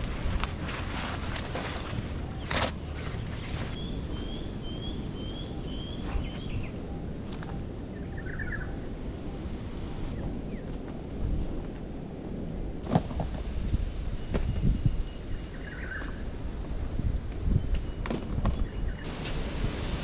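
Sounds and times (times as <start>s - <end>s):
wind rumble on microphone: 0.0s - 20.0s
bird chirping: 2.2s - 10.2s.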